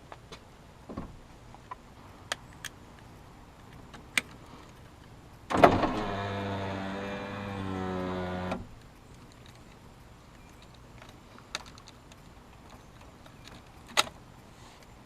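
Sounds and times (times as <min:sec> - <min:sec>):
power window motor humming: 0:05.6 - 0:08.7.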